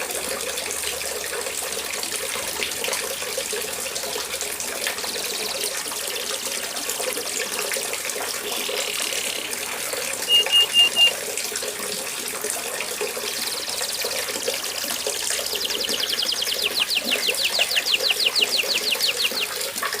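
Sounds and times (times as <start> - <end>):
canary singing: 10.2 - 11.2, 15.0 - 19.7.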